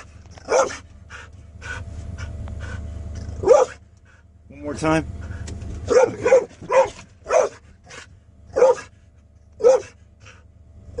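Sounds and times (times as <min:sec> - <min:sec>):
dog barking: 0:00.4 - 0:00.8, 0:03.4 - 0:03.8, 0:05.9 - 0:07.6, 0:08.5 - 0:09.0, 0:09.6 - 0:10.0.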